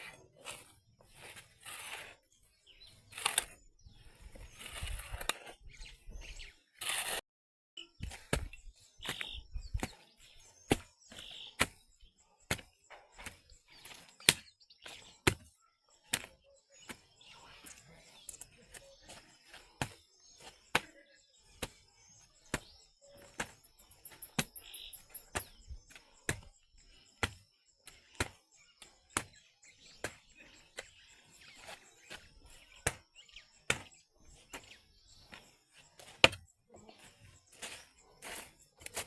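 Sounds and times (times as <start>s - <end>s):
hand tool digging wet soil: 0.0s - 7.2s, 8.0s - 39.0s.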